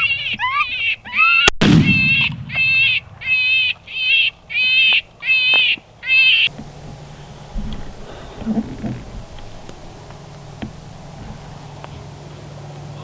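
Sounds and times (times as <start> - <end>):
shotgun blast: 1.6 - 3.2.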